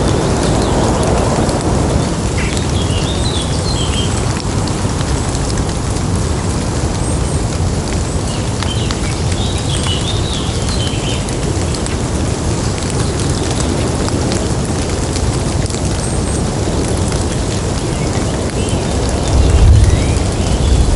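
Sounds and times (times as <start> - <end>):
steady rain: 0.0 - 20.9
water dripping off leaves: 0.0 - 20.9
low rumble: 18.7 - 20.9.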